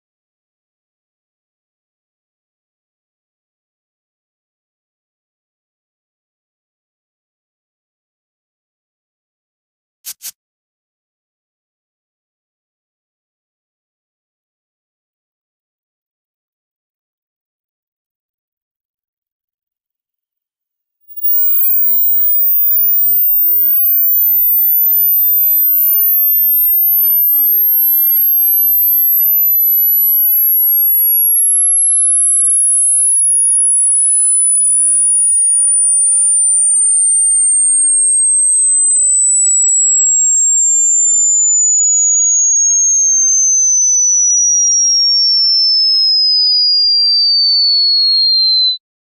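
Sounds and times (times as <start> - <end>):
falling sine tone sweep: 21.1 - 48.8.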